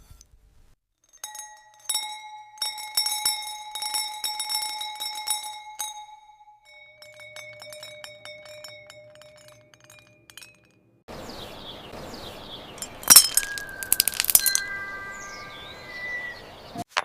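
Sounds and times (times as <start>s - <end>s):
glass clinking and tinkling: 1.0s - 11.0s, 12.6s - 16.5s
sharp glass crack: 7.1s - 10.9s, 12.7s - 15.6s.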